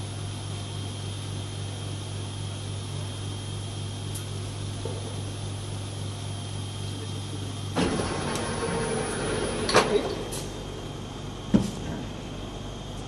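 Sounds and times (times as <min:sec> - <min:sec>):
welding machine hum: 0:01.2 - 0:11.4
sharp machine clunk: 0:07.8 - 0:10.4.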